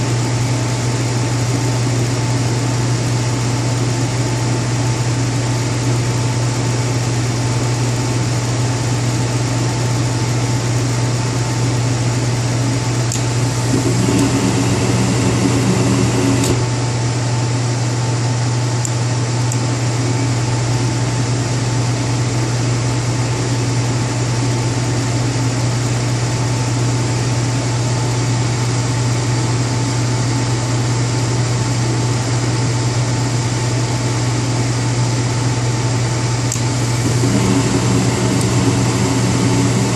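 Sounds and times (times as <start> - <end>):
furnace humming: 11.8 - 31.2, 32.0 - 39.9
sharp click: 13.1 - 13.3, 36.5 - 36.7
high whine: 13.1 - 16.8, 36.5 - 39.9.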